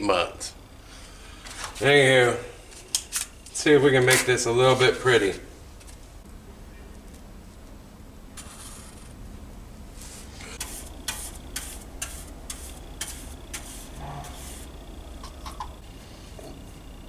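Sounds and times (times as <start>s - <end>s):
file rasping on metal: 10.6s - 14.7s.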